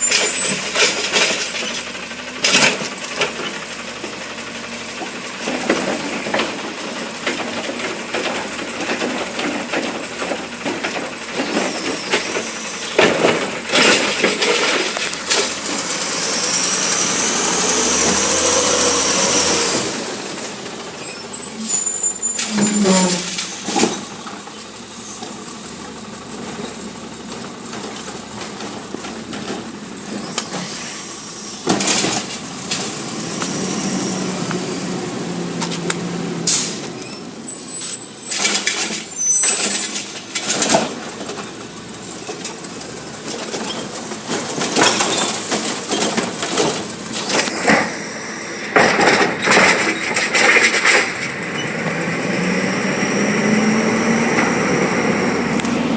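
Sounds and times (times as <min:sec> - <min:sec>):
high squeal: 0:00.0 - 0:01.0, 0:21.0 - 0:24.1, 0:37.0 - 0:40.0
garbage truck engine: 0:00.0 - 0:55.9
sharp clanks: 0:05.0 - 0:15.8, 0:35.6 - 0:41.6, 0:48.7 - 0:51.8.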